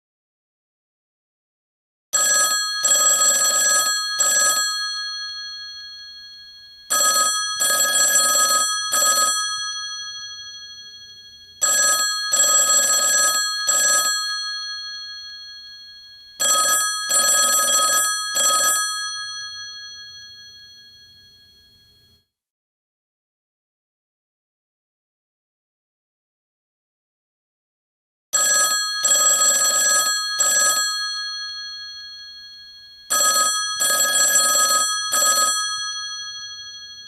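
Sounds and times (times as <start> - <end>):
telephone bell ringing: 2.2 - 22.3, 28.4 - 37.0.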